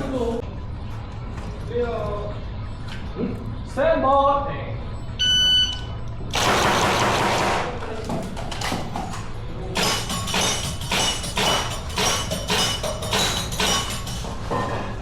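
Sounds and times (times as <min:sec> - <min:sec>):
electronic beep: 0:05.0 - 0:06.0.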